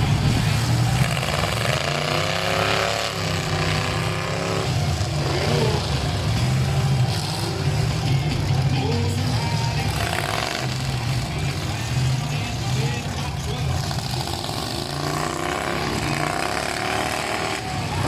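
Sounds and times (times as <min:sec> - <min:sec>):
engine revving: 0:00.0 - 0:18.0
truck engines droning: 0:00.0 - 0:18.0.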